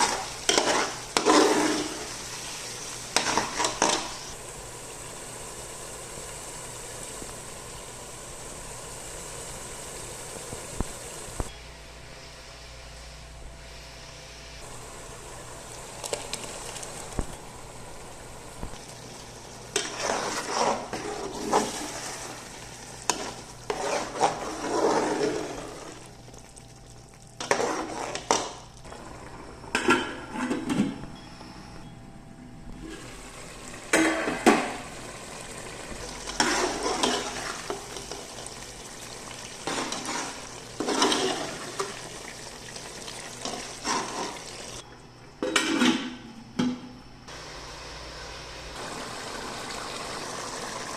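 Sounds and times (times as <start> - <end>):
spoon scraping a cooking pot: 0.0 - 2.2, 19.7 - 22.0, 23.1 - 25.9, 36.3 - 38.2, 39.7 - 42.0.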